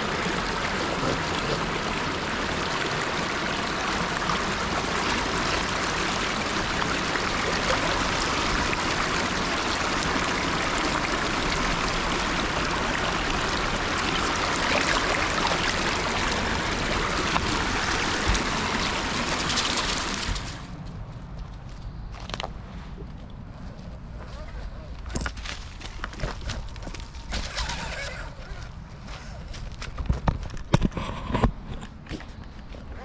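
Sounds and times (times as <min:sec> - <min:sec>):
river stream flowing: 0:00.0 - 0:20.6.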